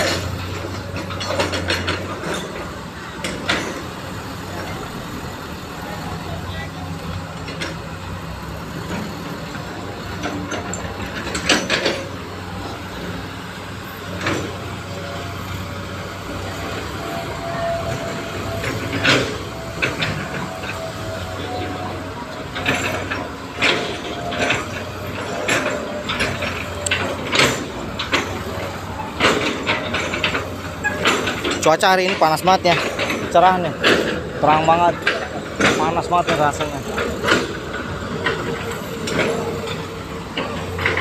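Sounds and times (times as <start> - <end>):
excavator diesel engine running: 0.0 - 41.0
sharp metallic knocks: 22.5 - 41.0.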